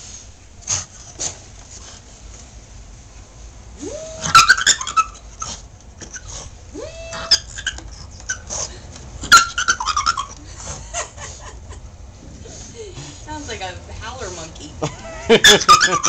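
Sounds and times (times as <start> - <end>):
dog whining: 3.8 - 11.5, 15.4 - 16.0
dog barking and yelping: 4.2 - 6.4, 7.0 - 11.5, 15.4 - 16.0.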